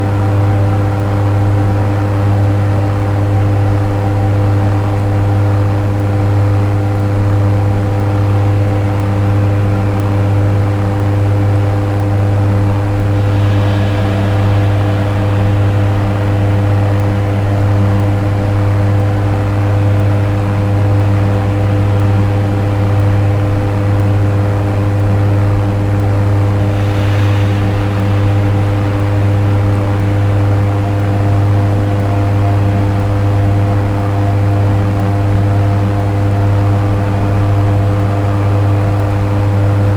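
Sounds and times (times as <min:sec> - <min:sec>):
synthesizer drone: 0:11.8 - 0:39.9
airy synth swells: 0:12.6 - 0:25.0, 0:26.0 - 0:39.9.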